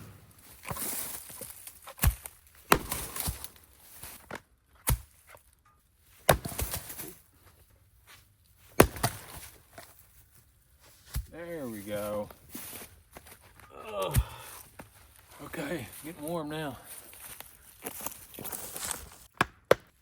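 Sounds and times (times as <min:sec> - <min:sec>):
splitting blade striking wood: 0:00.0 - 0:00.8, 0:01.9 - 0:03.6, 0:08.8 - 0:09.4, 0:19.3 - 0:20.0.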